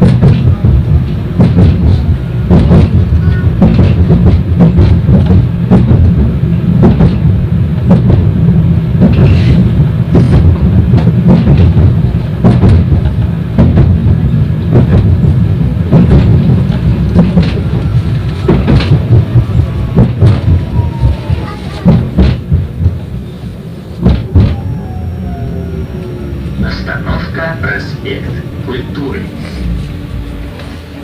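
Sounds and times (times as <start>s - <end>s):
wheels knocking on rails: 0.0s - 23.2s, 23.9s - 25.3s
tram running gear rumble: 0.0s - 31.0s.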